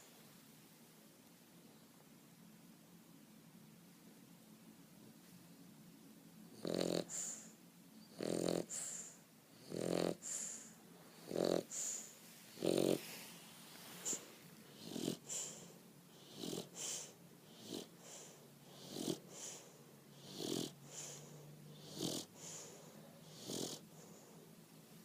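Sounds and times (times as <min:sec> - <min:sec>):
dog snoring: 0:06.5 - 0:13.3, 0:14.0 - 0:24.4.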